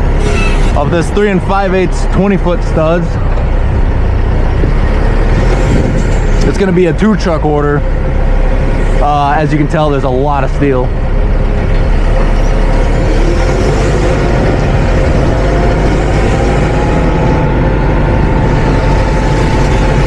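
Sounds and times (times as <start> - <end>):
forklift engine revving: 0.0 - 20.0
wind buffeting microphone: 3.0 - 7.2, 10.9 - 20.0.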